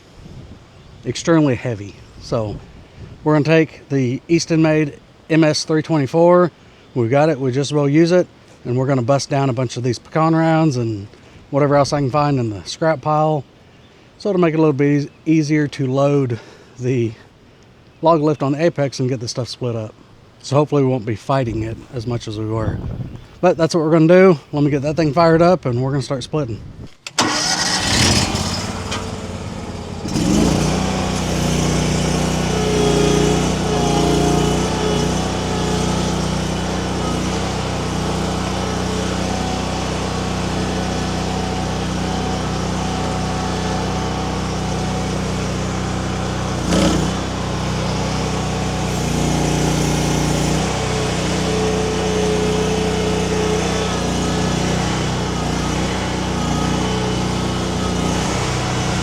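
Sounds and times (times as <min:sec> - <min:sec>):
small engine running: 0:27.2 - 0:59.0.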